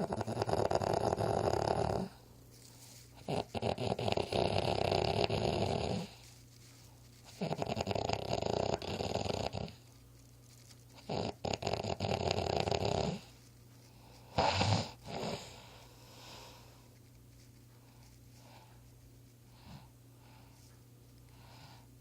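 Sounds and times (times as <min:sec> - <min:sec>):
person snoring: 0:00.0 - 0:02.2, 0:07.4 - 0:09.8, 0:14.3 - 0:15.7
short snorts: 0:14.3 - 0:16.5.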